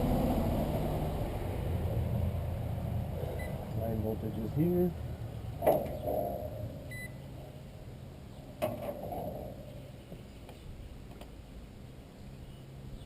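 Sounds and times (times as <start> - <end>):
low steady hum: 0.0 - 13.0
multimeter beep: 6.9 - 7.2.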